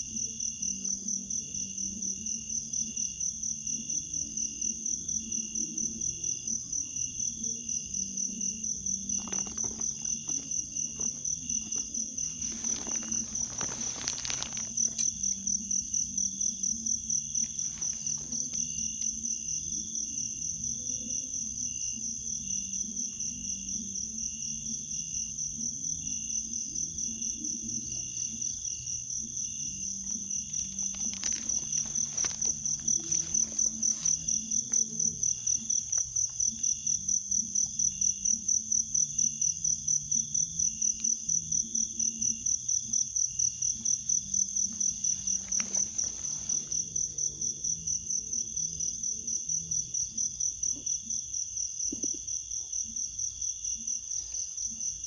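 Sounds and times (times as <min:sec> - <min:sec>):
crickets trilling: 0:00.0 - 0:55.0
brief rustling: 0:09.1 - 0:15.4, 0:17.4 - 0:18.7, 0:30.4 - 0:36.1, 0:44.7 - 0:47.0.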